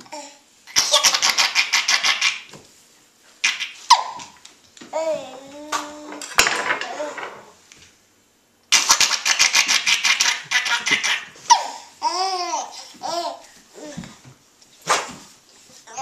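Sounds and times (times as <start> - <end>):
high-pitched squealing giggles: 0.7 - 2.5, 8.8 - 11.8
toddler laughing: 0.7 - 2.5, 8.9 - 14.0.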